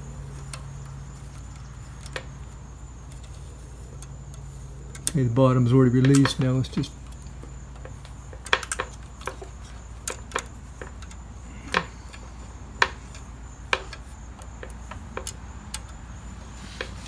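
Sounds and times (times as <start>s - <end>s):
low steady hum: 0.0s - 17.0s
sharp metal clicks and clacks: 5.9s - 17.0s.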